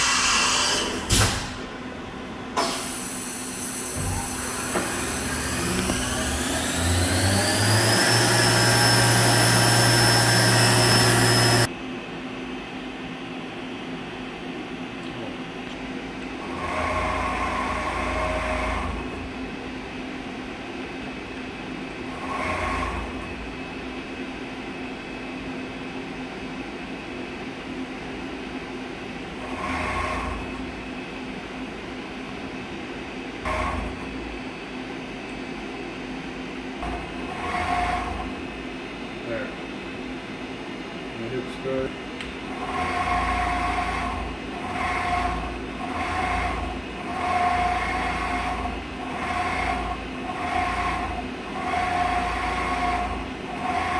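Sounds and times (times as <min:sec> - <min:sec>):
machine humming: 0:00.0 - 0:11.7
motor whine spinning up: 0:00.0 - 0:11.7
short machine whirs: 0:00.0 - 0:11.7.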